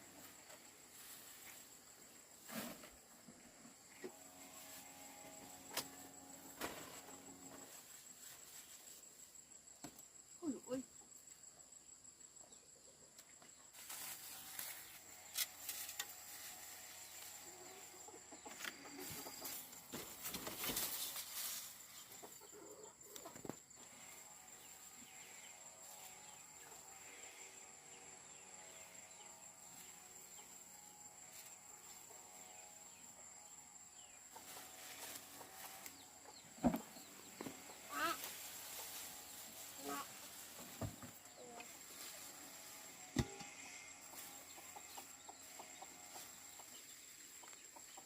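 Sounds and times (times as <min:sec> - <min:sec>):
high insect trill: 0:03.8 - 0:12.9, 0:13.5 - 0:48.0
chickens clucking: 0:17.0 - 0:23.7, 0:34.3 - 0:48.0.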